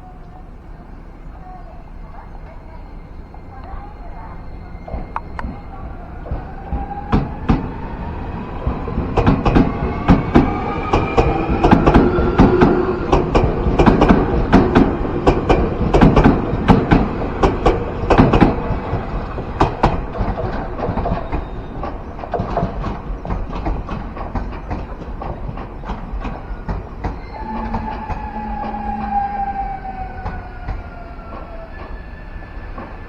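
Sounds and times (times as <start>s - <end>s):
train wheels clacking over rail joints: 3.6s - 33.0s.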